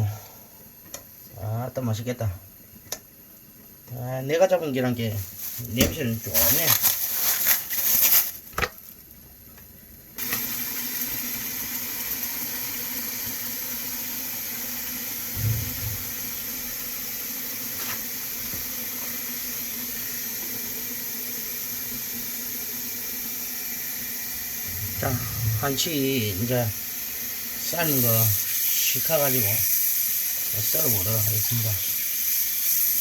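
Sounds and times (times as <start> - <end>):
appliance hiss with low hum: 0.0 - 33.0
dull low thump: 15.4 - 16.3, 24.7 - 25.9.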